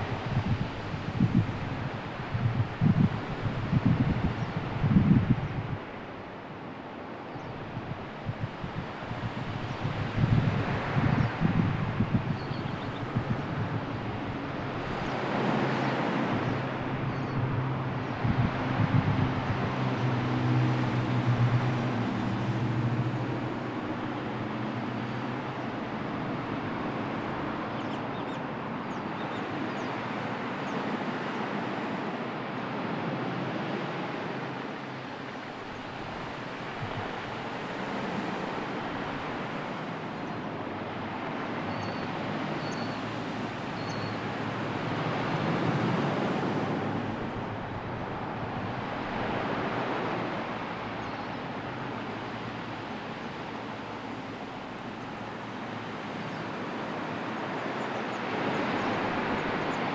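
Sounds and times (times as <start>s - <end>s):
sea surf washing in: 0.0s - 6.8s, 7.6s - 27.8s, 29.4s - 59.9s.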